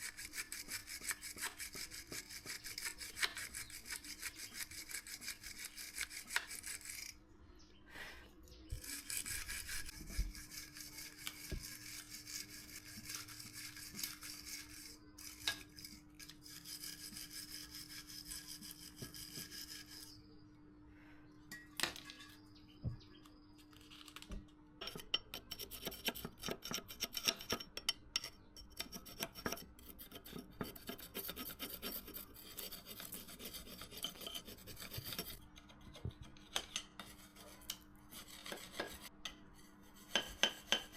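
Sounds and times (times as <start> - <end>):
hand tool scraping workpiece: 24.8 - 40.9.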